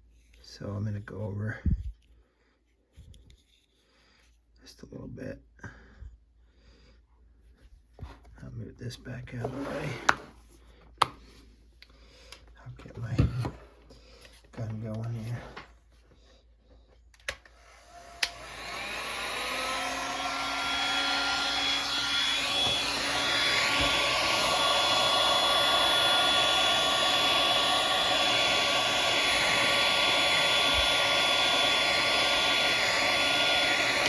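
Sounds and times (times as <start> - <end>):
heat gun fan whine: 17.2 - 34.0
heat gun switch click: 18.2 - 18.4.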